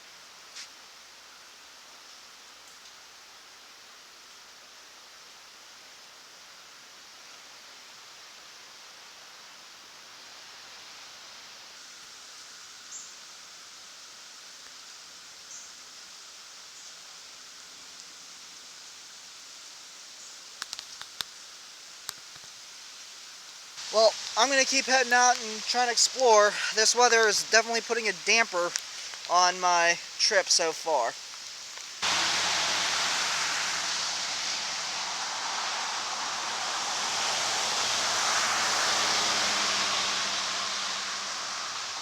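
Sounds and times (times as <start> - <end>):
steady rain falling: 0.0 - 42.0
faint drips: 23.8 - 29.3.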